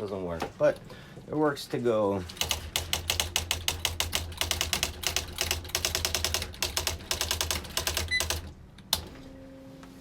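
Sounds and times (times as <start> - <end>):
typewriter motor hum: 2.3 - 8.6
typewriter hammer striking: 2.4 - 8.5.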